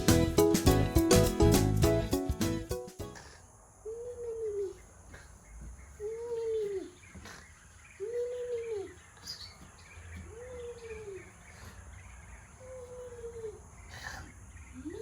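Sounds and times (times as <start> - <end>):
low hooting bird call: 3.8 - 9.6, 10.2 - 15.0.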